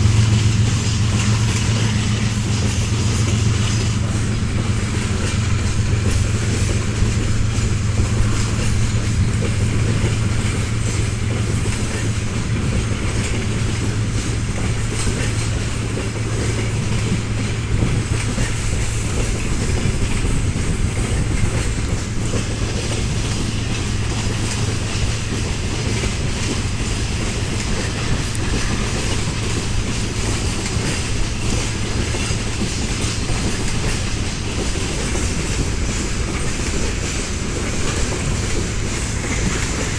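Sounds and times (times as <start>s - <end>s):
train wheels clattering over rail joints: 0.0s - 39.9s.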